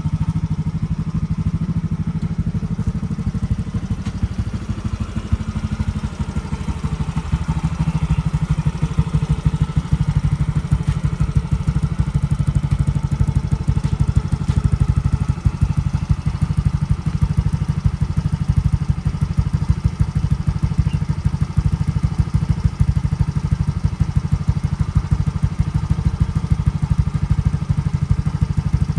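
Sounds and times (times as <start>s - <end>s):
scooter engine idling: 0.0s - 28.9s.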